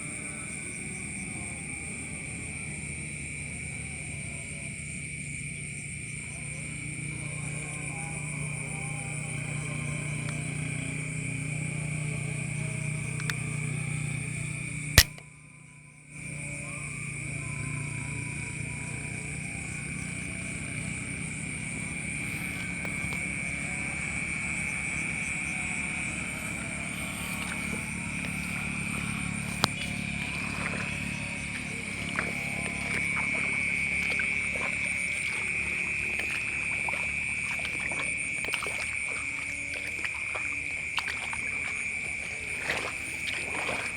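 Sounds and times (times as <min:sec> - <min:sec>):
faint click: 0:13.2 - 0:13.5, 0:15.0 - 0:15.2.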